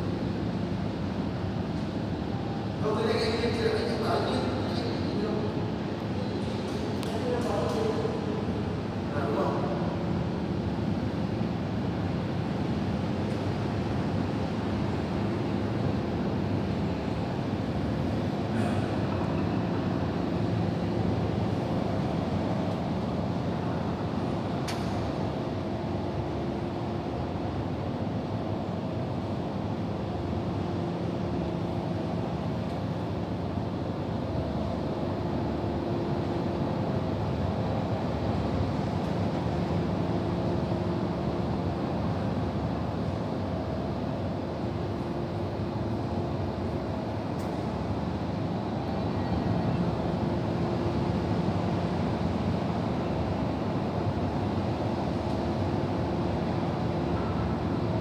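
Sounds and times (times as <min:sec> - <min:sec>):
faint steady hum: 0:00.0 - 0:58.0.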